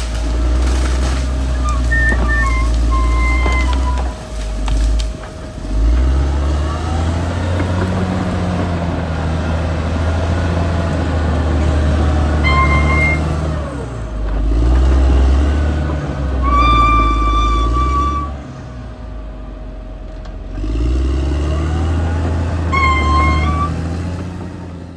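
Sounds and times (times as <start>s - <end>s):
bulldozer diesel engine under load: 0.0s - 24.9s
short high squeals: 1.4s - 4.3s, 12.4s - 13.4s, 16.4s - 18.4s, 22.6s - 23.8s.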